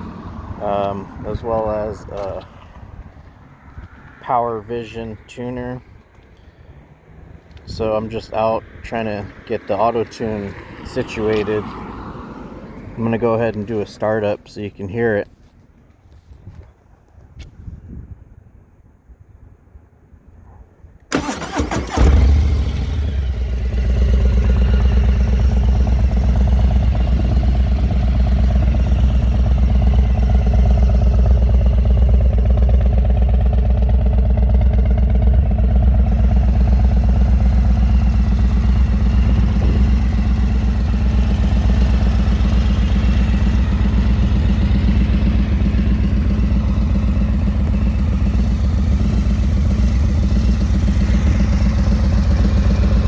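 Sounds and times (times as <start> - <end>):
motorcycle engine idling: 21.1 - 53.0.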